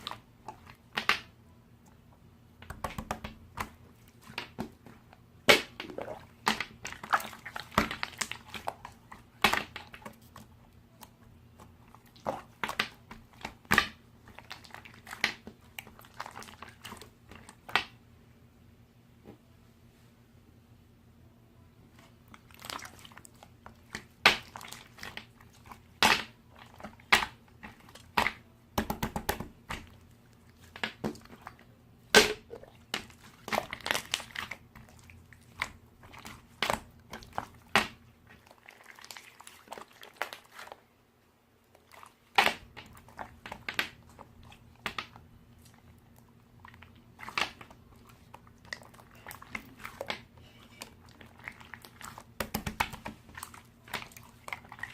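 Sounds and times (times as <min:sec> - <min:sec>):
faint low hum: 0:00.0 - 0:38.8.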